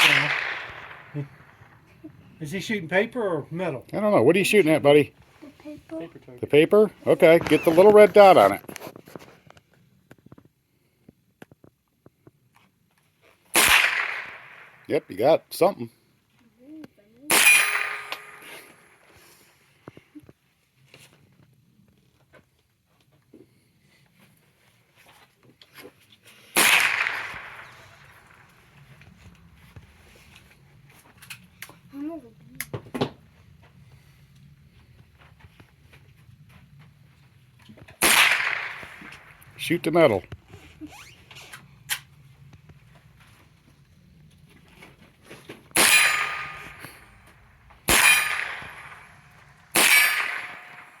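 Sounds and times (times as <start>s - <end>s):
rifle shot: 0.0s - 1.9s, 13.5s - 14.9s, 17.3s - 19.1s, 26.6s - 29.0s, 38.0s - 40.2s, 45.7s - 51.0s
steel target clanging: 17.3s - 18.9s, 45.8s - 51.0s.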